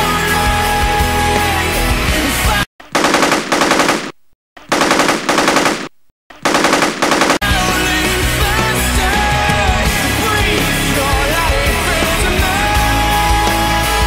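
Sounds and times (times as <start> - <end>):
rock music: 0.0 - 2.7, 7.4 - 14.0
airsoft gun full-auto fire: 2.9 - 7.4.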